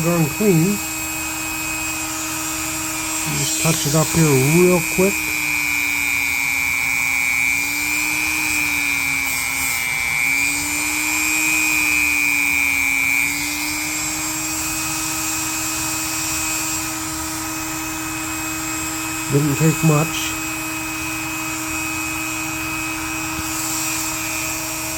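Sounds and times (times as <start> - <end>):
rotary tool whining: 0.0 - 24.9.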